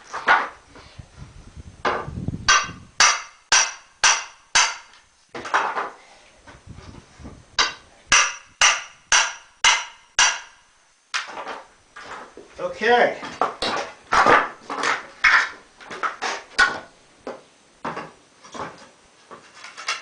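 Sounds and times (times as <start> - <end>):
hammer striking crowbar: 2.5 - 5.0, 7.6 - 11.3.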